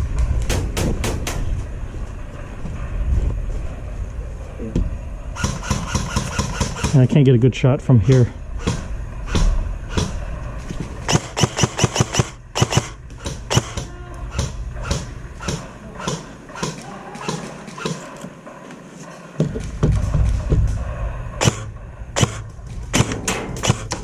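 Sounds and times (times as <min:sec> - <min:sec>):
steady low rumble: 0:00.0 - 0:24.0
airsoft gunshots: 0:05.4 - 0:07.2, 0:08.0 - 0:10.2, 0:11.0 - 0:20.4, 0:21.4 - 0:24.0.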